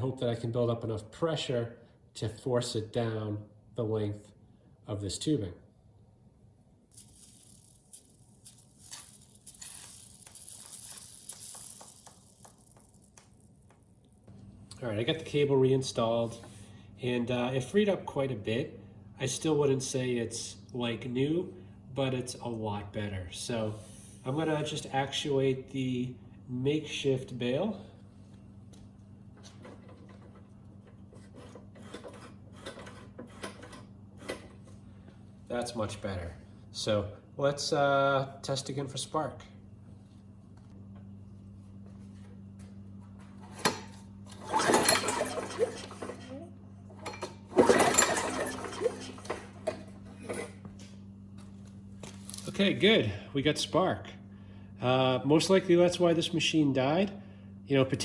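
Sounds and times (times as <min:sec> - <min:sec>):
cable rubbing: 0:06.9 - 0:13.5.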